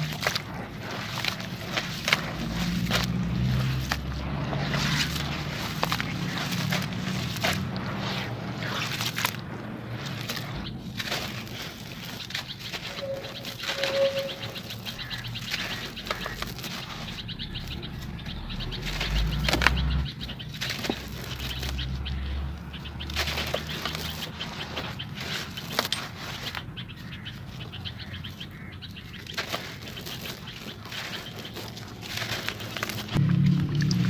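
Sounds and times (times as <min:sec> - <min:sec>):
deep rumble: 0:00.0 - 0:24.4, 0:33.0 - 0:34.0
dry dirt crunching and crumbling: 0:00.0 - 0:34.0.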